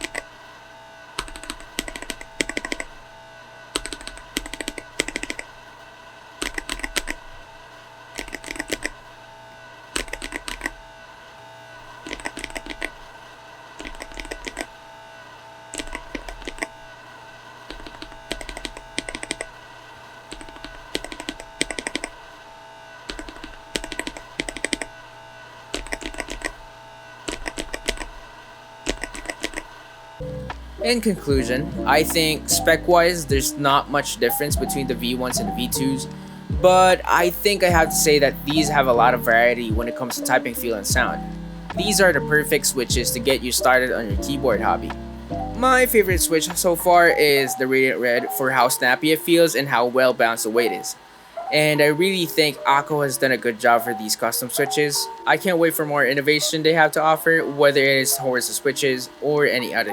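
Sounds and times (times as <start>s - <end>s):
mechanical keyboard typing: 1.2s - 2.9s, 3.8s - 5.5s, 6.4s - 7.2s, 8.2s - 9.0s, 10.0s - 10.8s, 12.1s - 13.0s, 13.8s - 14.7s, 15.8s - 16.7s, 17.7s - 19.5s, 20.3s - 22.2s, 23.1s - 24.9s, 25.7s - 26.6s, 27.3s - 28.2s, 28.9s - 29.7s.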